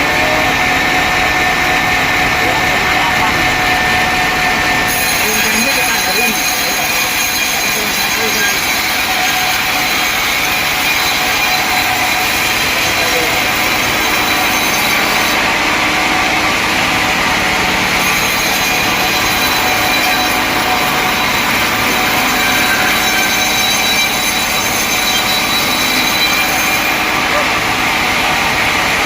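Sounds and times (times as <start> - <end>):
sawmill saw cutting log: 0.0 - 29.0.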